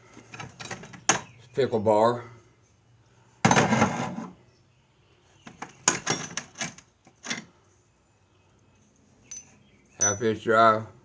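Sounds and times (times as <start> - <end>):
metal tools clinking: 0.3 - 1.3, 5.6 - 7.5, 9.3 - 10.4.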